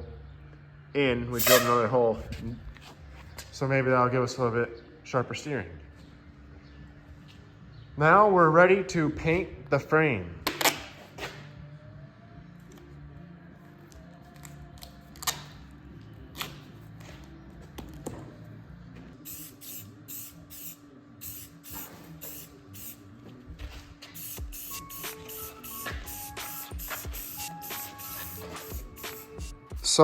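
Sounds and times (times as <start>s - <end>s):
spray can hissing bursts: 1.4s - 1.7s, 19.2s - 23.0s, 24.0s - 29.7s.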